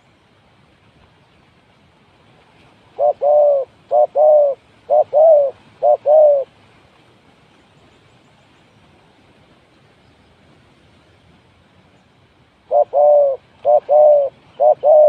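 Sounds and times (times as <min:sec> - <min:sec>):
dove cooing: 0:03.0 - 0:06.5, 0:12.7 - 0:15.0.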